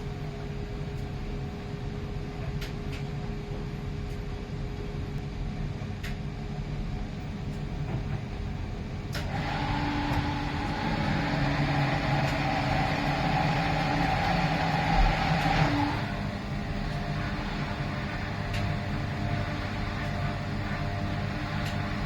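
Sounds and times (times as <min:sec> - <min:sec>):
washing machine humming: 0:00.0 - 0:22.0
click: 0:02.6 - 0:03.1, 0:06.0 - 0:06.2, 0:18.5 - 0:18.8
steady whine and rushing: 0:07.0 - 0:22.0.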